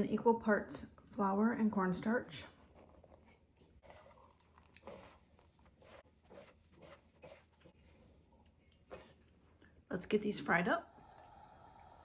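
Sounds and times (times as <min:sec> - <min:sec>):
patting and rustling of coated chicken: 0:02.4 - 0:09.7.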